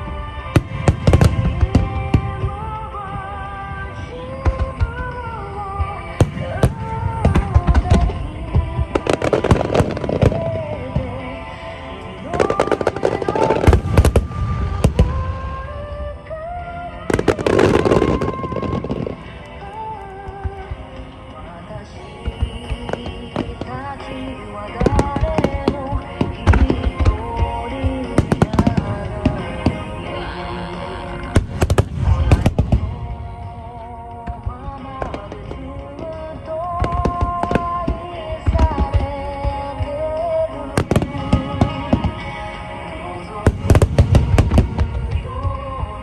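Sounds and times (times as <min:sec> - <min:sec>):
fireworks crackling: 0:00.0 - 0:46.0
music: 0:00.0 - 0:46.0
fireworks deep booms: 0:31.4 - 0:33.6.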